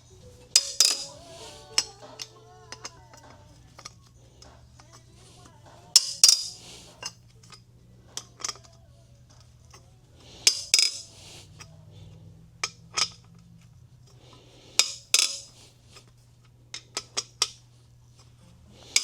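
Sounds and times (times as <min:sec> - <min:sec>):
steady low hum: 0:00.0 - 0:19.0
metal tools clinking: 0:00.4 - 0:04.1, 0:06.0 - 0:09.8, 0:10.4 - 0:11.7, 0:14.8 - 0:15.6
ringing metallic clanks: 0:00.5 - 0:02.0, 0:06.0 - 0:06.6, 0:10.5 - 0:11.1, 0:14.8 - 0:15.6.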